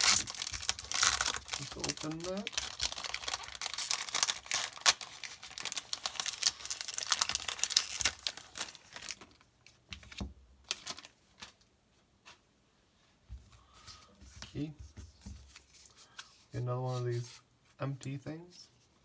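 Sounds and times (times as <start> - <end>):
wrapper tearing and crinkling: 0.0 - 9.4, 10.7 - 11.1
soft rustles and taps: 13.2 - 16.3.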